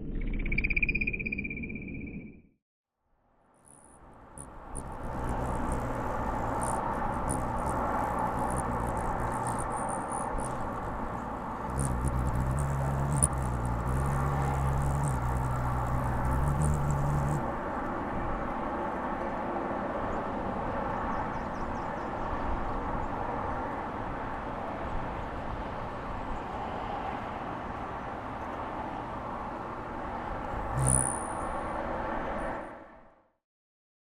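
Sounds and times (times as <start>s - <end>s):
high thin chirping trills: 3.7s - 17.4s, 30.6s - 31.5s
hummingbird wing hum: 3.8s - 17.5s, 30.5s - 31.5s
slowed-down wing sounds: 4.4s - 17.6s.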